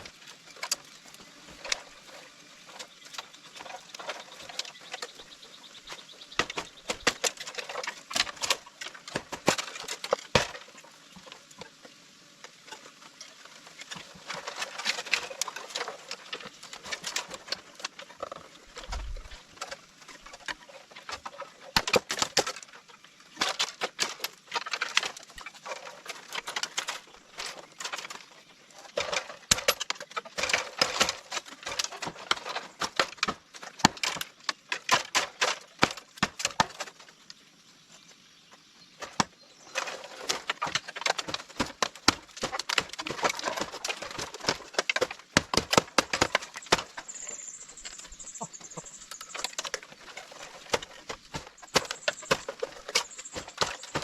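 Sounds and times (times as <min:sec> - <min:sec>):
tools knocking and clattering: 0:39.8 - 0:54.0.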